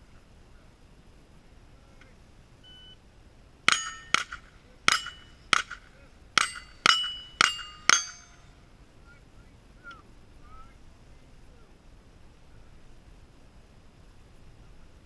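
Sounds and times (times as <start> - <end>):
rifle shots: 3.7 - 8.4
steel plate ringing: 3.7 - 8.6.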